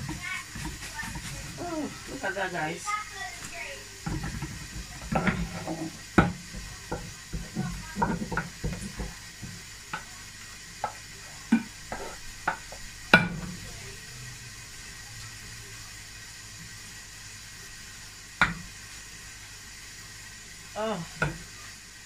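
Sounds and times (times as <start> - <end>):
utensil knocking and scraping pot: 0.0 - 2.2, 4.0 - 10.1, 10.8 - 13.4.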